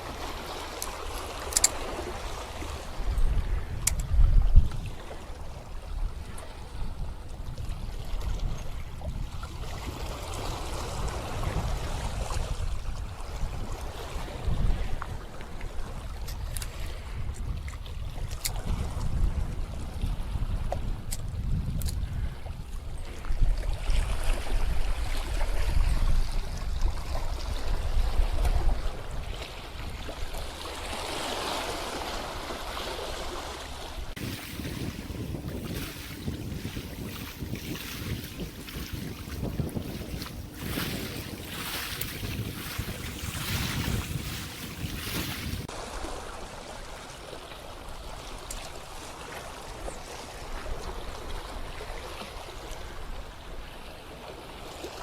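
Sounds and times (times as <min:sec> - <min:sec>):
wind buffeting microphone: 0:00.0 - 0:30.9, 0:33.9 - 0:45.7
sea waves on rocky shore: 0:00.0 - 0:55.0
sea waves washing over rocks: 0:23.9 - 0:49.7.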